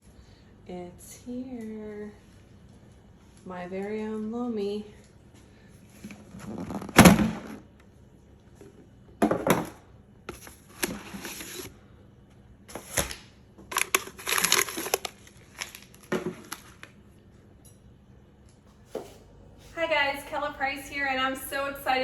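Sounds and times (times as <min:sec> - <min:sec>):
cardboard packaging crinkling and tearing: 0:12.7 - 0:16.9.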